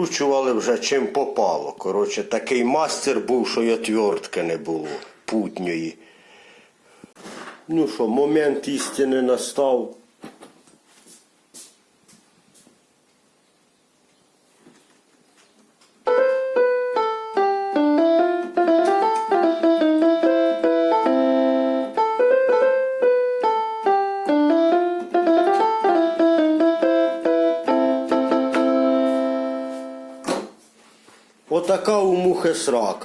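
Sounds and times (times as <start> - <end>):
electronic keyboard melody: 16.0 - 30.3.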